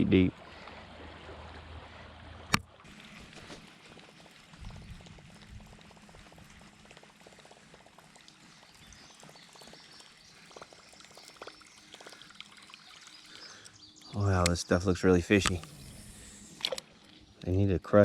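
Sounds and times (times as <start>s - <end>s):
water trickling and lapping: 0.0s - 18.0s
small ticks: 4.2s - 14.6s.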